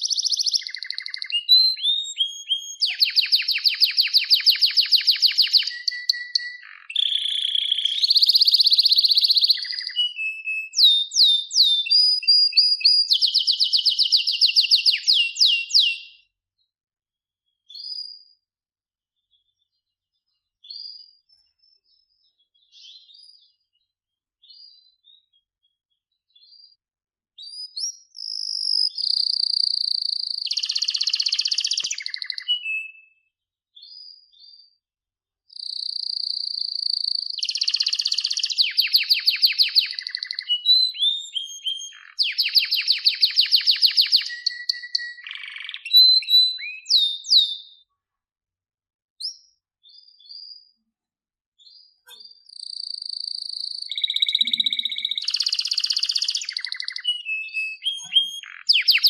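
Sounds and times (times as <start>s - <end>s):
canary singing trills: 0.0s - 16.3s, 27.4s - 33.2s, 35.5s - 47.9s, 51.6s - 59.0s
short bird chirps: 0.0s - 16.3s, 27.4s - 34.6s, 35.5s - 48.0s, 51.6s - 59.0s.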